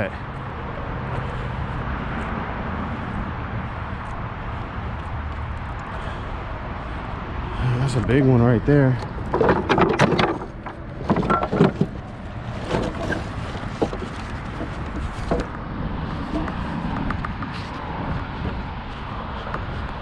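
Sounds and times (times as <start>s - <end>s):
street noise hum: 0.0s - 20.0s
wooden boards knocking: 9.0s - 15.6s.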